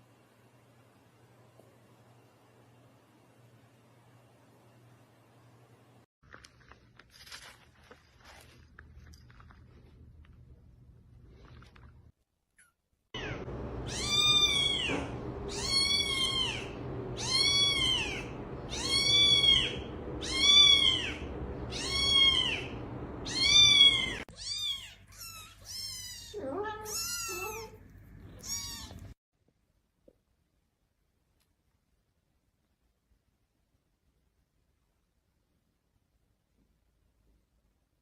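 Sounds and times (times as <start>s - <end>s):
cat meowing: 13.2s - 29.1s.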